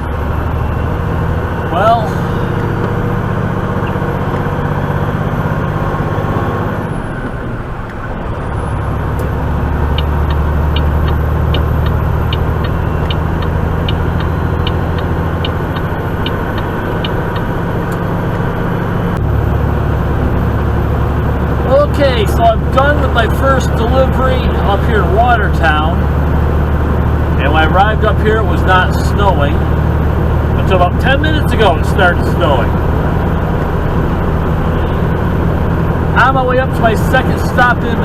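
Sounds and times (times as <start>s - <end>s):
truck diesel engine running: 0.0s - 38.0s
light ticking: 9.2s - 18.4s.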